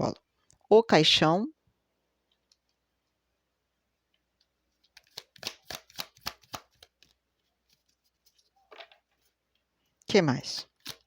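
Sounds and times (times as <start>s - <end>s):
cards being shuffled: 4.7s - 9.4s, 10.4s - 11.0s.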